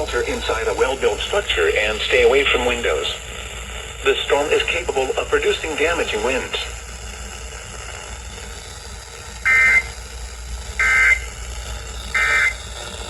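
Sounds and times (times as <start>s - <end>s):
two-tone digital data screech: 9.4s - 10.0s, 10.7s - 11.4s, 12.1s - 13.0s.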